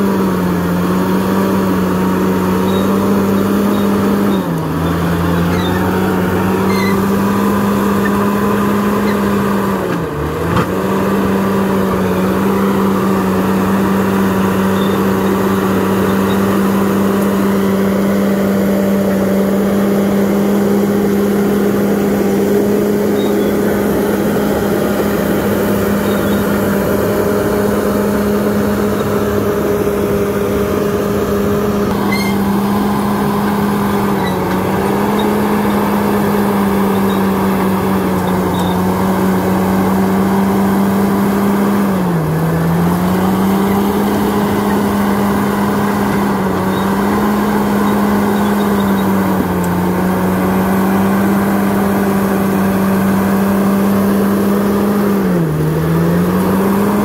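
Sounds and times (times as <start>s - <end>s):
bulldozer diesel engine running: 0.0s - 57.0s.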